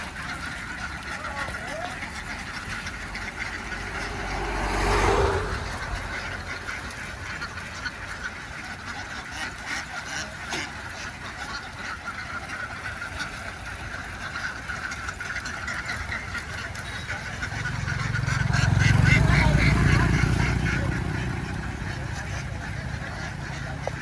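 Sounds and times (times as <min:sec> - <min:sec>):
flock of ducks quacking: 0:00.0 - 0:24.0
rush of noise with low rumble: 0:03.0 - 0:07.6.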